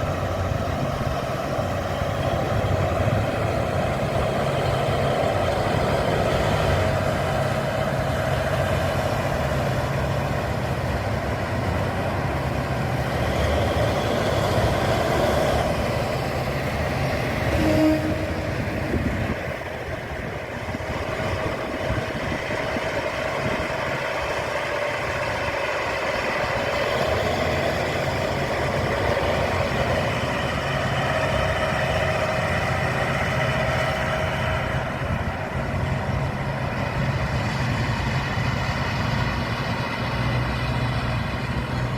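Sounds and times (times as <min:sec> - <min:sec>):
diesel railcar engine running: 0:00.0 - 0:41.9.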